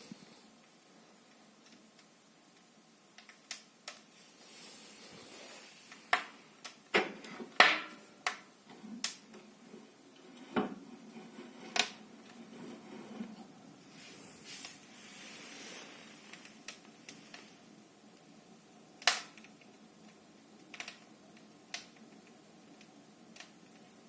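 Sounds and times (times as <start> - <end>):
wood stove clicking and knocking: 5.9 - 13.4, 19.0 - 24.0.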